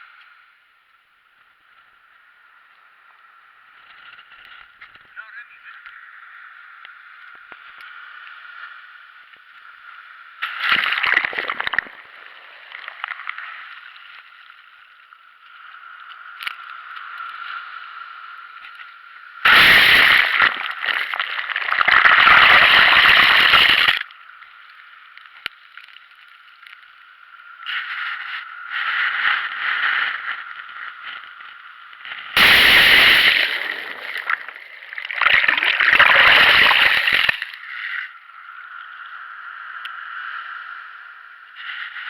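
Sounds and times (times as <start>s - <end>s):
sea water sloshing and splashing: 10.4s - 14.1s, 19.5s - 24.0s, 32.2s - 37.7s
steady high hiss: 32.4s - 37.6s.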